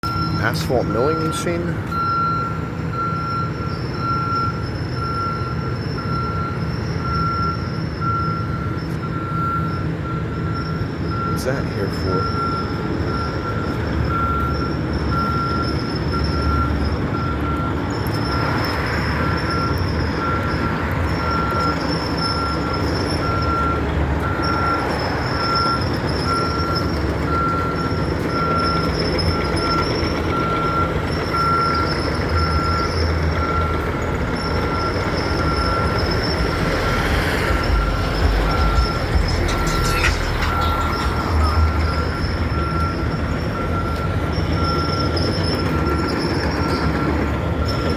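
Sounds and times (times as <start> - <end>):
backup alarm beeping: 0.0 - 47.9
heavy diesel machinery running: 0.0 - 47.9
short squeal: 24.4 - 47.9.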